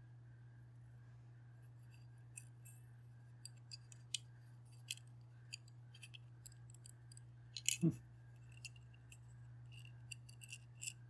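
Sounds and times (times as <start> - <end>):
low steady hum: 0.0 - 11.0
small clicks of timer parts: 3.4 - 11.0.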